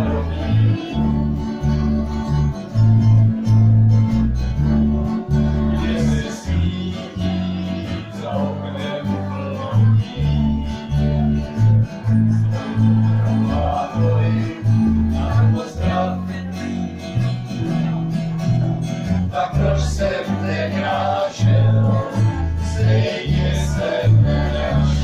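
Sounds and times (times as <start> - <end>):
acoustic guitar strumming: 0.0 - 25.0
low bass notes: 0.0 - 25.0.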